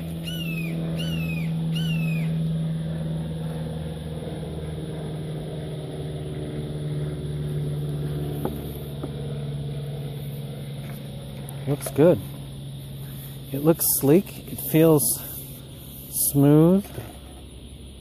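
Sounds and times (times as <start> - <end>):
bird chirping: 0.0 - 2.4
low mechanical hum: 0.0 - 18.0.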